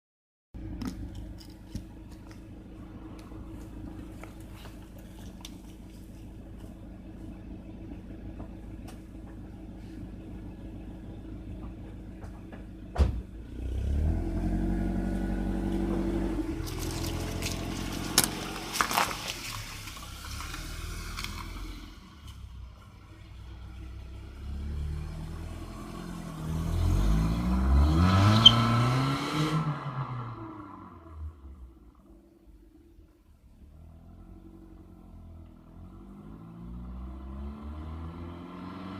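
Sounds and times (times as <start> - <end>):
car engine idling and revving: 0.6 - 38.9
exhaust cracks: 15.1 - 23.8.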